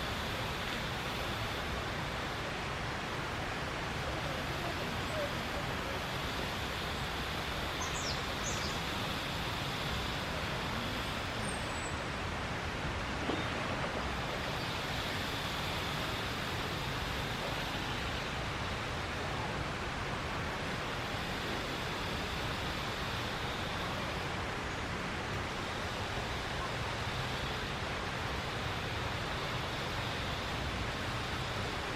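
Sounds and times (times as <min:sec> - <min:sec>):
outdoor background noise: 0:00.0 - 0:31.9.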